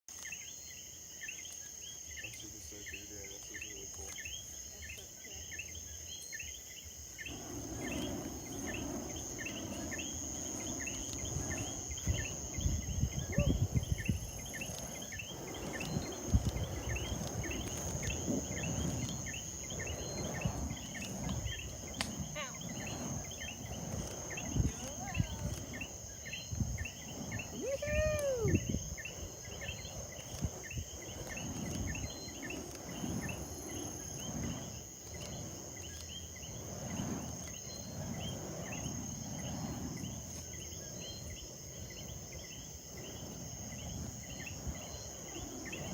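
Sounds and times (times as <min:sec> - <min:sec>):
crickets chirping: 0:00.1 - 0:45.9
insects buzzing: 0:00.1 - 0:45.9
low rumbling noise: 0:07.3 - 0:45.9.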